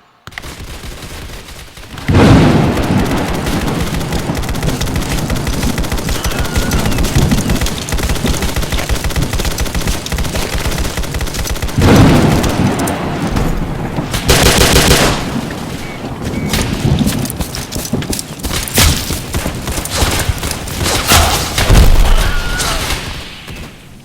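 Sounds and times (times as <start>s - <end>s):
automatic gunfire: 0.3s - 13.0s, 14.2s - 15.4s.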